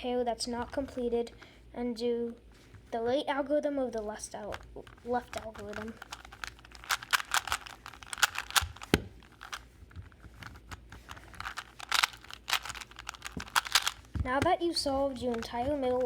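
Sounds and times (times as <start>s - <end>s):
puzzle cube layers clicking: 4.5s - 14.1s.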